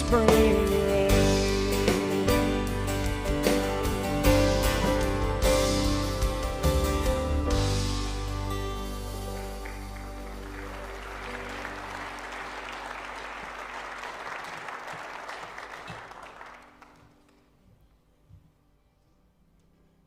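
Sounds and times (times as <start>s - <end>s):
held chord of accompaniment: 0.0s - 17.0s
audience applauding: 9.0s - 17.5s.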